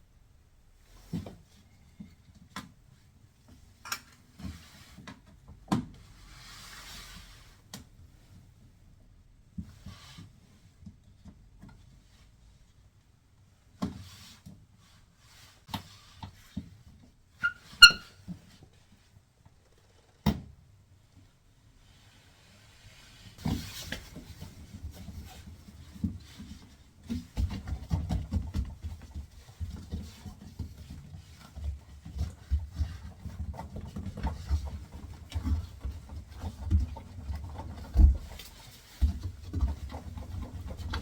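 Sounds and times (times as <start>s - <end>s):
brief squeak: 17.4s - 18.2s.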